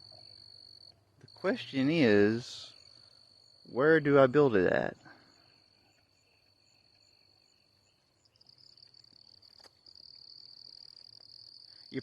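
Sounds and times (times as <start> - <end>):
crickets trilling: 0.0 - 12.0
pulsing insect call: 5.3 - 12.0.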